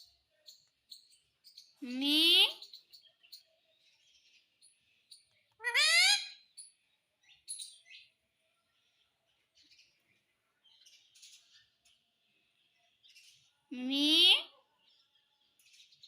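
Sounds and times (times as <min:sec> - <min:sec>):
parrot soft chirps: 0:04.2 - 0:08.1.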